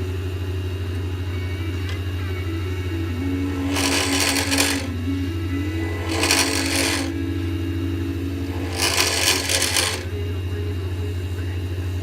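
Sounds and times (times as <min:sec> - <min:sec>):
lathe motor humming: 0:00.0 - 0:12.0
turning tool scraping: 0:03.4 - 0:05.0, 0:05.7 - 0:07.2, 0:08.4 - 0:10.1.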